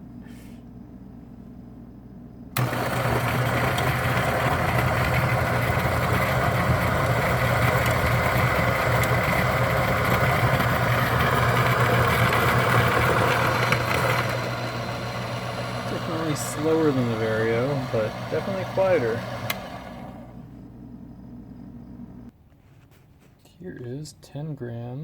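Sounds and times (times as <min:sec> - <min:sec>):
low motor hum: 0:01.6 - 0:22.3
coffee grinder grinding beans: 0:02.6 - 0:20.4.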